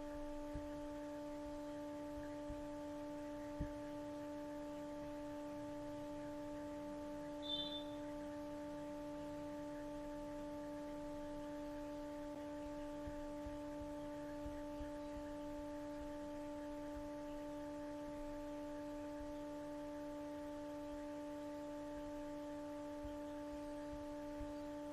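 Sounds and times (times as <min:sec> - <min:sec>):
short high beep: 0:07.4 - 0:08.0.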